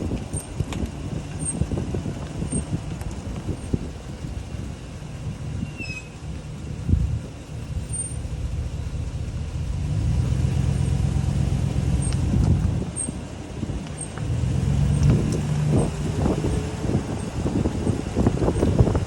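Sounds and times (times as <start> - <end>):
road and drivetrain rumble: 0.0 - 19.0
high-pitched brake chirps: 5.6 - 6.2.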